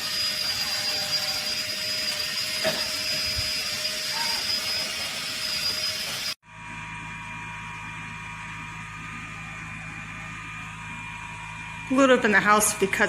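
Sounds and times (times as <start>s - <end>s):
toy suction fan whirring: 0.0s - 6.4s.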